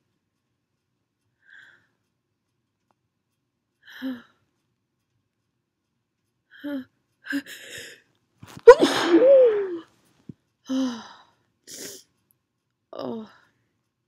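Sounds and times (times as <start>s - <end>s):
person sneezing: 8.7s - 9.8s
person sniffing: 11.7s - 12.0s.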